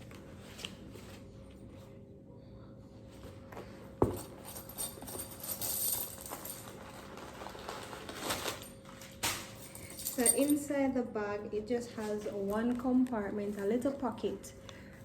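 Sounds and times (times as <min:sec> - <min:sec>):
bag rustling: 0:04.1 - 0:10.5.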